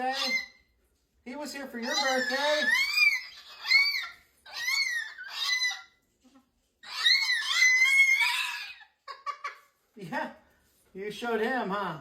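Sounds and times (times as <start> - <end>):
cockatoo calling: 1.8 - 9.7.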